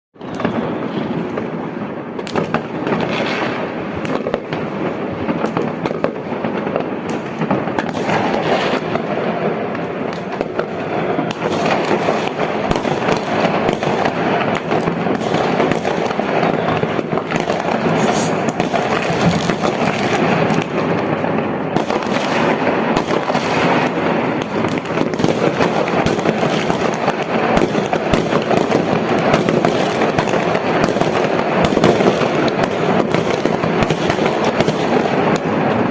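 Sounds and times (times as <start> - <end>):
fireworks bangs and crackling: 0.2 - 35.9.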